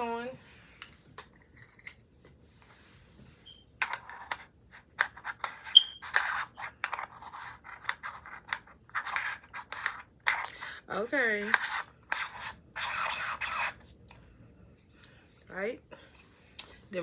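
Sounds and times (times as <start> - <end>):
short squeak: 5.7 - 6.0.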